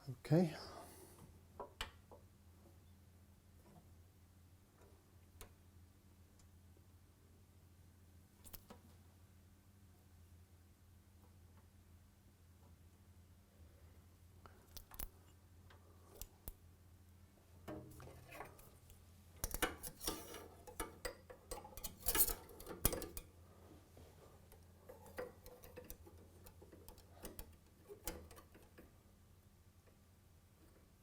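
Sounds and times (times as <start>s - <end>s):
faint steady hum: 0.0s - 31.0s
metal parts and hand tools clinking: 19.4s - 23.3s.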